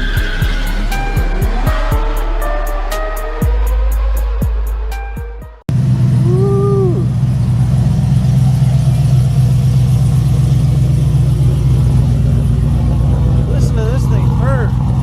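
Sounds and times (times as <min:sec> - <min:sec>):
rising and falling tone: 0:00.0 - 0:08.0
engine idling with choppy lope: 0:00.0 - 0:15.0.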